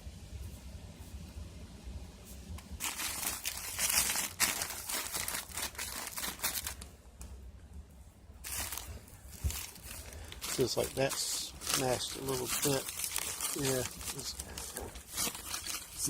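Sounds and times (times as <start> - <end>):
steady low hum: 0.0 - 16.0
plastic duct crinkling: 2.8 - 6.9, 8.4 - 16.0.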